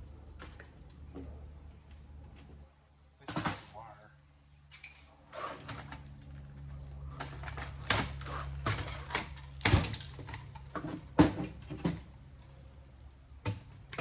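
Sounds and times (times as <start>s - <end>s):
steady low hum: 0.0s - 14.0s
metal and plastic parts clattering: 4.7s - 12.1s.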